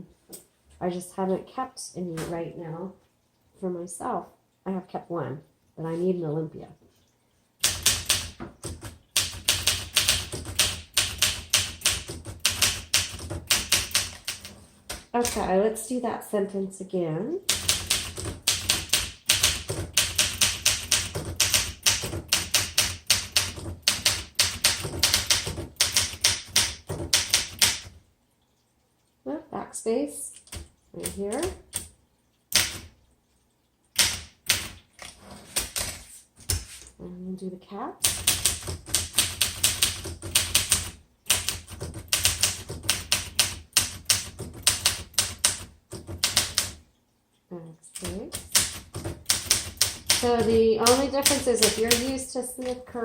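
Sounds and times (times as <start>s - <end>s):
manual typewriter typing: 7.6s - 15.6s, 17.4s - 28.0s, 30.3s - 31.9s, 32.5s - 32.9s, 34.0s - 36.7s, 38.0s - 46.8s, 47.9s - 53.0s.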